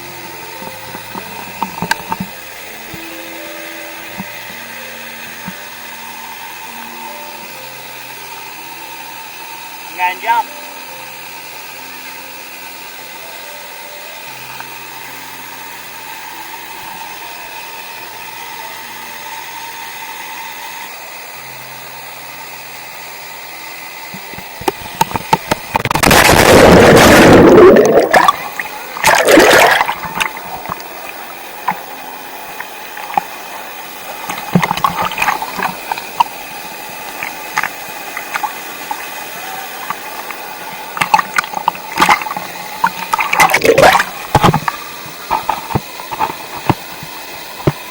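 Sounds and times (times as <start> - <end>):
waterfall rushing into pool: 0.0 - 19.7, 21.1 - 47.9
small splashes and knocks: 29.0 - 30.8.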